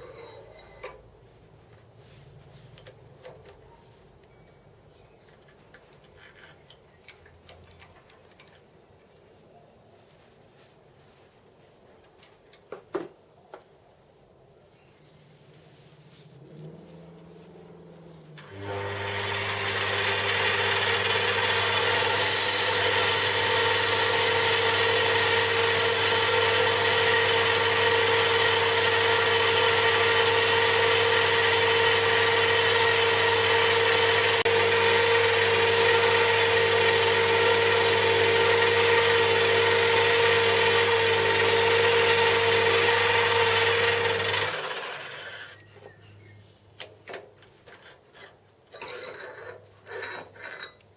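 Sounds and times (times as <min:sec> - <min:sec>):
electric machine tool running: 0:18.4 - 0:45.6.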